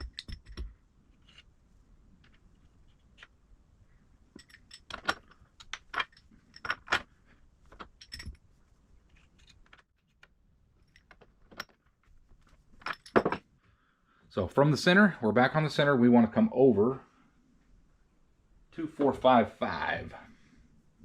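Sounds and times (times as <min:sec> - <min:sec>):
metal tools clinking: 0:04.3 - 0:07.2, 0:07.8 - 0:08.5, 0:12.5 - 0:13.5.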